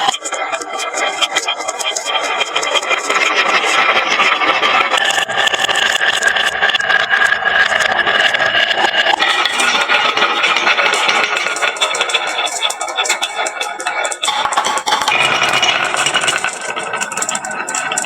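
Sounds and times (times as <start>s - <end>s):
marbles rolling down wooden run: 5.0s - 18.0s.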